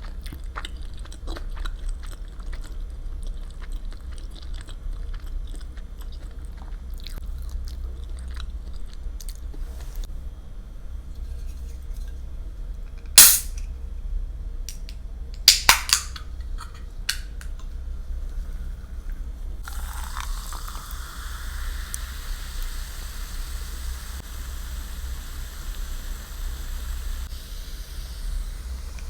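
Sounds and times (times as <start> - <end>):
quiet chewing: 0.0 - 10.0
steady low hum: 0.0 - 29.0.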